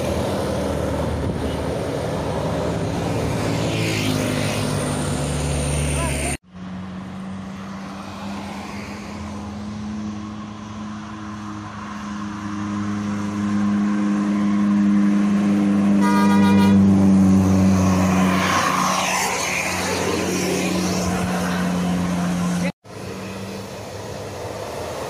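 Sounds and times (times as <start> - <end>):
bus engine passing: 0.0 - 25.0
rush of passing noise: 0.0 - 25.0
bus horn toot: 16.0 - 16.9.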